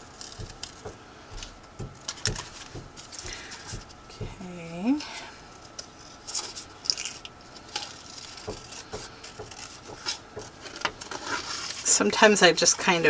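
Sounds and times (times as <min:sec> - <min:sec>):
scissors snipping paper: 0:00.0 - 0:03.9, 0:06.3 - 0:13.0
soft paper rustles: 0:05.0 - 0:13.0.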